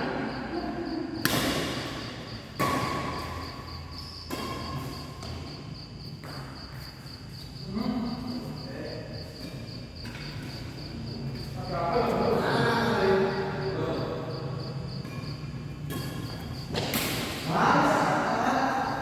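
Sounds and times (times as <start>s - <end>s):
rackets hitting shuttlecock: 1.2s - 5.5s, 15.0s - 17.6s.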